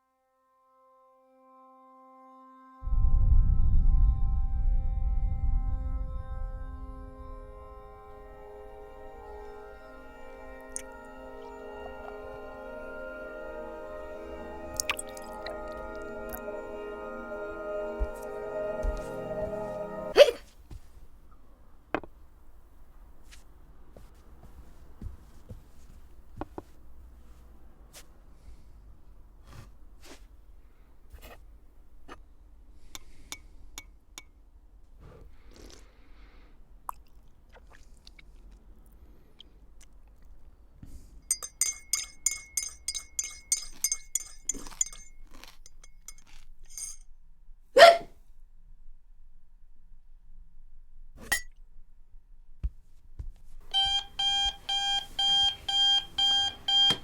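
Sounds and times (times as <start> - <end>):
light clinks and scrapes: 41.2 - 47.1
sharp ringing clinks: 41.3 - 47.0
electronic alarm beeping: 53.7 - 57.0.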